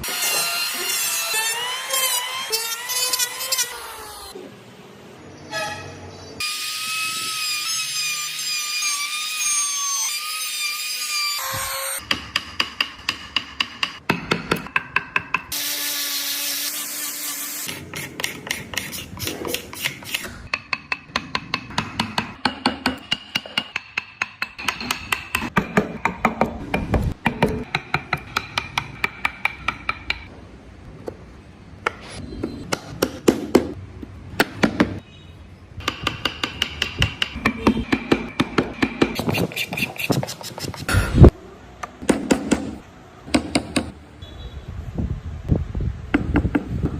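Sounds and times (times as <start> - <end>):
hammer tapping chisel into wood: 20.5 - 30.3.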